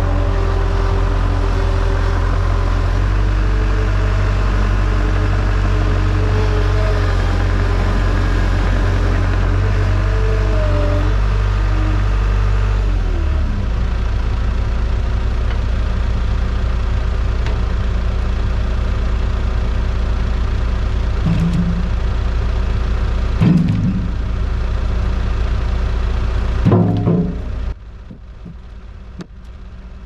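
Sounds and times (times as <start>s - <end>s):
engine running: 0.0s - 30.0s.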